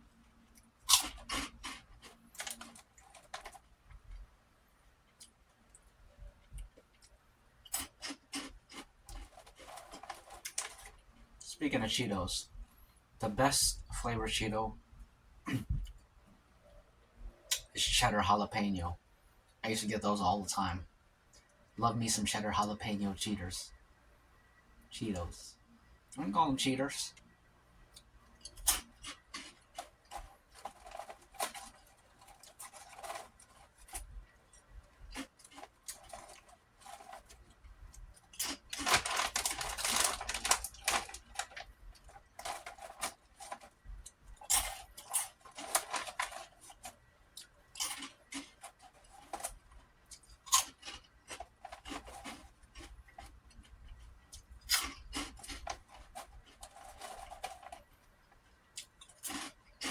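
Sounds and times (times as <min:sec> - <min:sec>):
crunching and chewing crackers: 0:00.0 - 0:12.7, 0:26.1 - 0:59.9
plastic bag crinkling: 0:00.9 - 0:03.6, 0:28.6 - 0:34.1, 0:38.2 - 0:43.8, 0:44.5 - 0:47.0.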